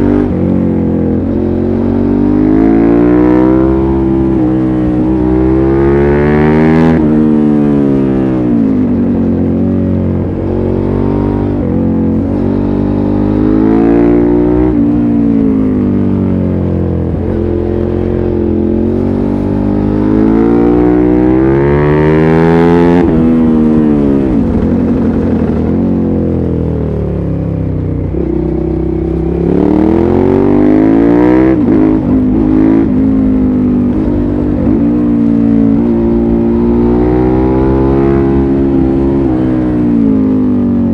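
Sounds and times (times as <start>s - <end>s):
motorcycle engine revving: 0.0s - 40.9s.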